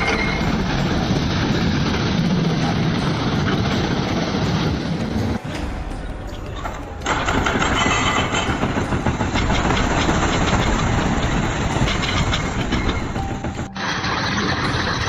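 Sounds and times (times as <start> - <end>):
excavator diesel engine running: 6.1 - 15.0.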